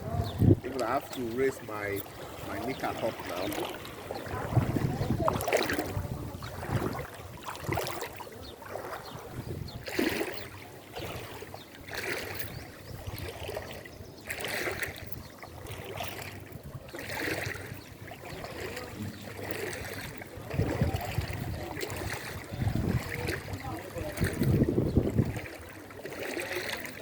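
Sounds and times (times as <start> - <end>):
legs wading through water: 0.0 - 27.0
moving water: 0.0 - 27.0.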